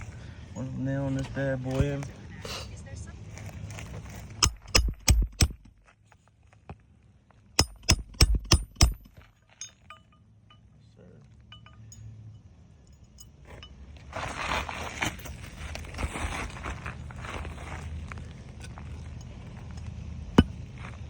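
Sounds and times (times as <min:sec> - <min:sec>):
hammer striking nail: 0:04.4 - 0:05.7, 0:07.6 - 0:09.2.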